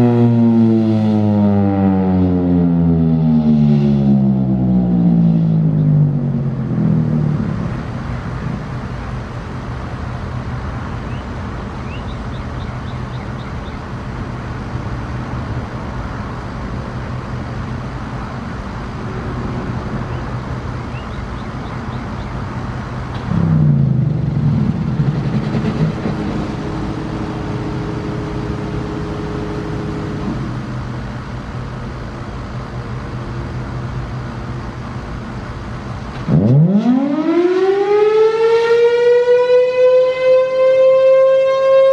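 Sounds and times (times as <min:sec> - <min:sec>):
steady rushing drone: 0:00.0 - 0:36.0
siren winding down: 0:17.8 - 0:23.7, 0:25.9 - 0:31.2, 0:36.3 - 0:41.9.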